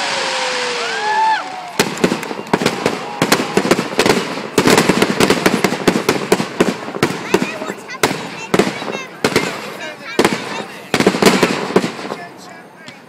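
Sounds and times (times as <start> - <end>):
firework whistle: 0.0 - 4.6
fireworks bangs and crackles: 0.0 - 13.0.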